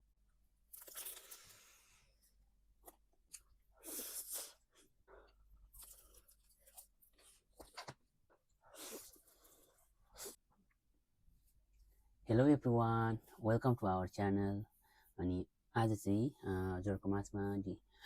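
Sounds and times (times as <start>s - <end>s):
chewing crisp food: 0.7s - 1.6s, 5.6s - 7.9s.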